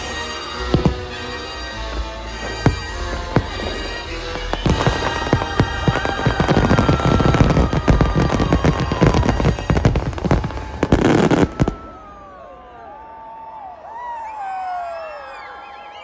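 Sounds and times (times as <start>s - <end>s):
fireworks bursts and crackling: 0.0s - 12.2s.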